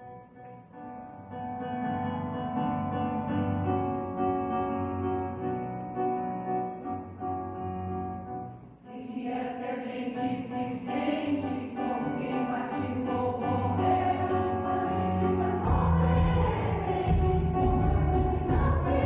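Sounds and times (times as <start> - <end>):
piano chords: 0.0 - 19.0
mixed choir singing: 8.9 - 19.0.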